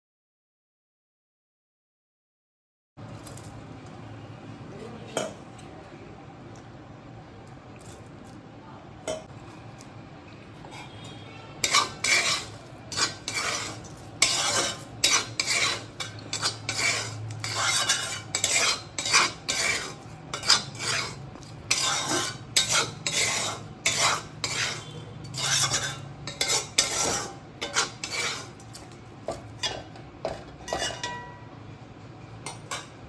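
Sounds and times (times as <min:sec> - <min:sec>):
metal utensil scraping cookware: 0:10.6 - 0:31.5, 0:32.4 - 0:33.0.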